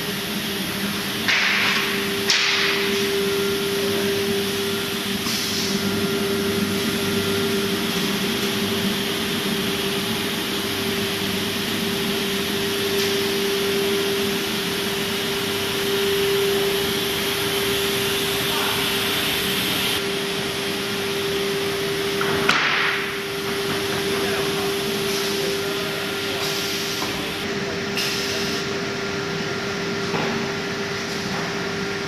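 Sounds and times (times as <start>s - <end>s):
router machine whine: 1.9s - 22.4s.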